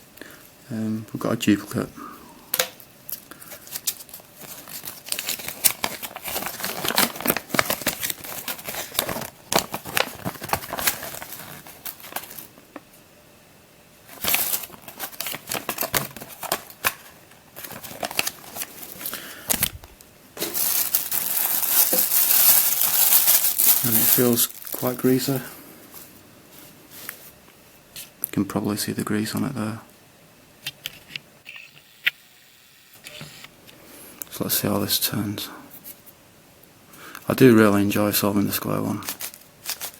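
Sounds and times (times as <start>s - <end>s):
packaging rustling and crackling: 3.1s - 12.6s, 14.1s - 26.2s, 39.0s - 39.9s.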